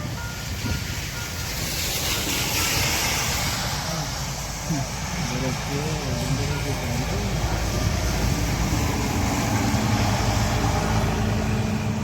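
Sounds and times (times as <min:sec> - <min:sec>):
heavy vehicle engine rumbling: 0:00.0 - 0:12.0.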